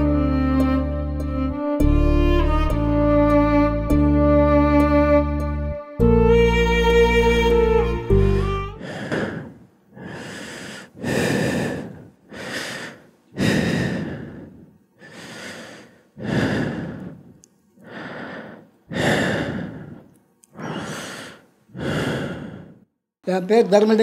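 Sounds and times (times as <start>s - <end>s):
man wheezing breaths: 8.8s - 22.9s.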